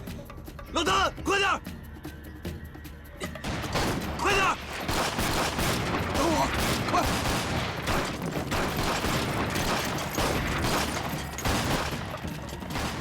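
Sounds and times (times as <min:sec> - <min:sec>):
gunfire: 0:03.4 - 0:13.0.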